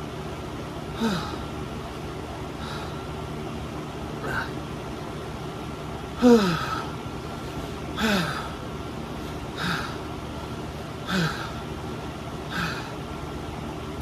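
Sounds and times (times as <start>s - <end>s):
person gasping breathy exhales: 1.0s - 1.4s.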